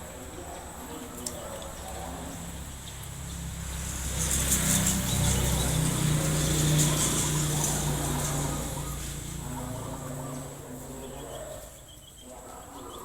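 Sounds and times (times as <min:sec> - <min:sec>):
vehicle engine passing by: 0:01.7 - 0:11.8.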